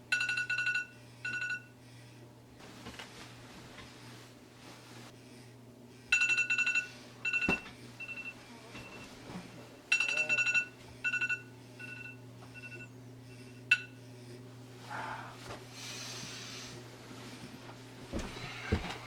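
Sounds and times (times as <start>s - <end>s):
phone alarm beeping: 0.1s - 1.7s, 6.1s - 9.1s, 9.9s - 14.0s.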